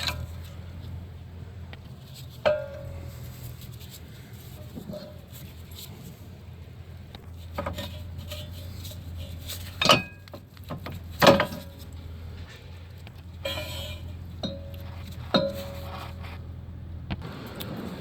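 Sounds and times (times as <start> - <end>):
steady low hum: 0.0 - 18.0
metal clinks and knocks: 1.9 - 6.1, 7.2 - 16.2.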